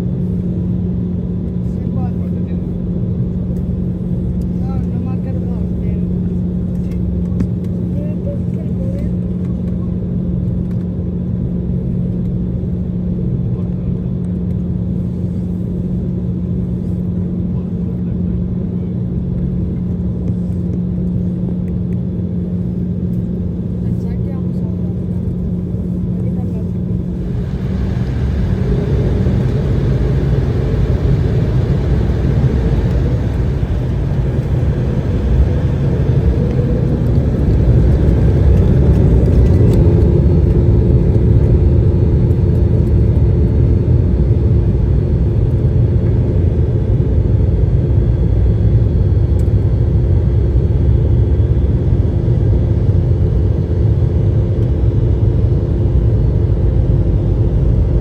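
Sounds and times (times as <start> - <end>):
airliner cabin rumble: 0.0 - 58.0
steady hum: 19.5 - 58.0.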